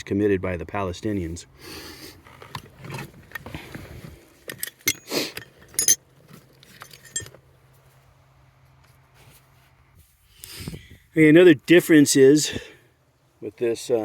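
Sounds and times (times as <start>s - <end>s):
metal parts clinking: 4.4s - 7.4s.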